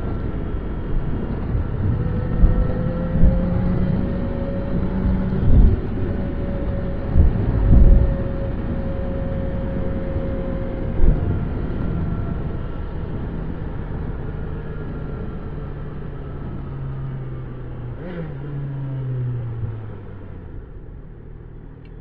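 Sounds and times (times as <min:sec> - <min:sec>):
motorcycle engine running: 0:01.2 - 0:12.3.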